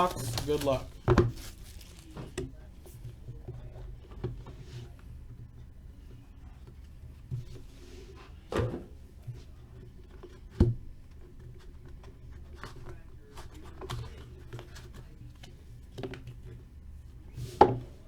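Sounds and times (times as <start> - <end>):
hands handling a card box: 0.0 - 2.5.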